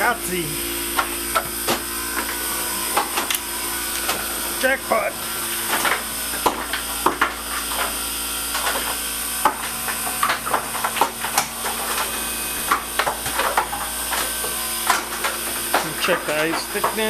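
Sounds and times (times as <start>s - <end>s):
ice machine humming: 0.0s - 17.0s.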